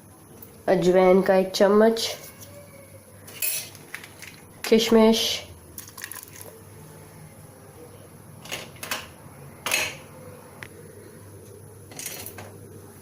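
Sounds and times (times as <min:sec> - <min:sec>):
utensils clattering at a pot: 0:03.3 - 0:04.4, 0:08.4 - 0:10.1, 0:11.9 - 0:12.6.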